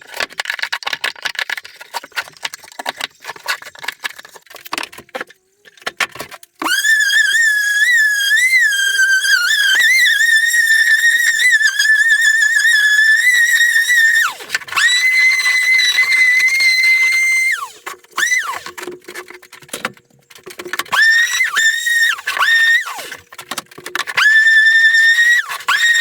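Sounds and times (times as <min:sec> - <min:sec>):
electric sander motor whining: 0:06.6 - 0:18.7, 0:20.9 - 0:23.2, 0:24.2 - 0:26.0.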